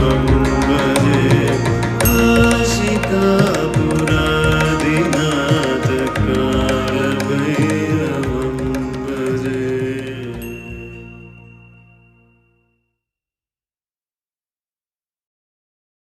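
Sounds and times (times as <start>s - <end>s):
hand drum strokes: 0.0s - 10.6s
sustained instrumental notes: 0.0s - 12.8s.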